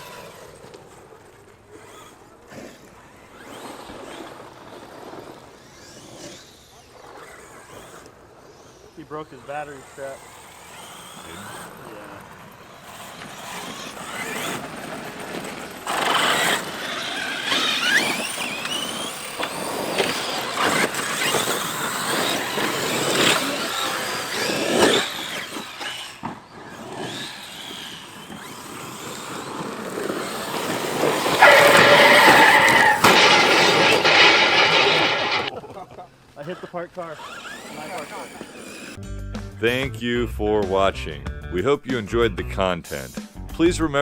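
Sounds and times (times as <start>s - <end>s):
electric motors whining: 0.0s - 35.5s, 36.4s - 39.0s
tyres squealing and scrabbling: 15.9s - 26.2s, 30.1s - 35.5s, 36.5s - 39.0s.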